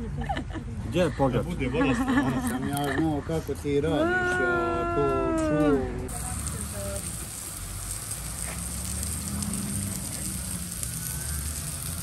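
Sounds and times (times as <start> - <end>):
food sizzling with crackles: 6.1 - 12.0.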